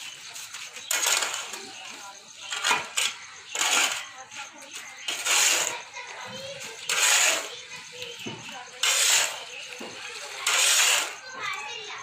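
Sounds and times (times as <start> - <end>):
noisy scraping strokes: 2.4 - 11.4.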